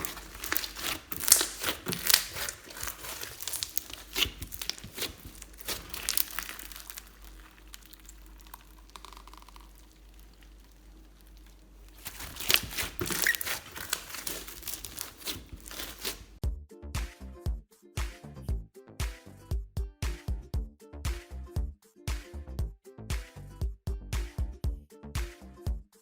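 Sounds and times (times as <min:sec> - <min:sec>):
slime squished by hand: 0:00.0 - 0:16.4.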